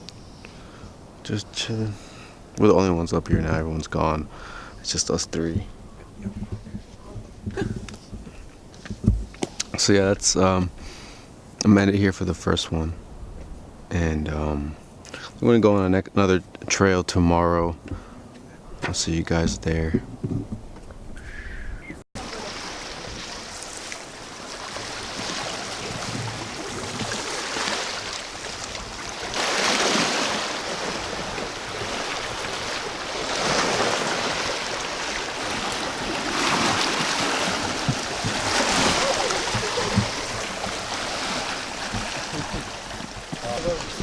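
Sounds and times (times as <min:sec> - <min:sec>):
rushing water: 0:22.2 - 0:44.0.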